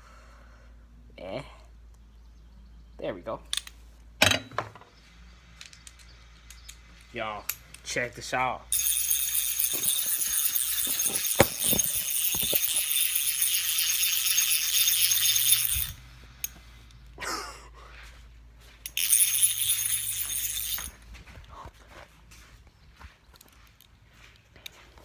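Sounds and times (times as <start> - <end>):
high metallic jingling rattle: 8.7 - 16.0, 18.8 - 21.0.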